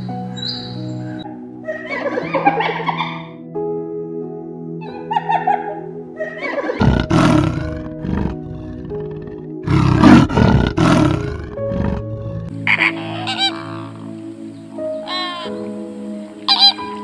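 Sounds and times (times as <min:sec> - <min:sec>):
background music: 0:00.0 - 0:17.0
big cat roaring: 0:06.7 - 0:14.1.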